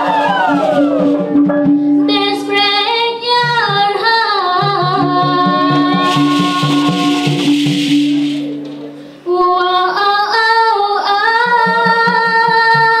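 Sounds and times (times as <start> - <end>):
drum beat: 0.0 - 1.9, 4.6 - 9.0
song accompaniment: 0.0 - 13.0
woman singing: 2.1 - 7.5, 9.2 - 13.0.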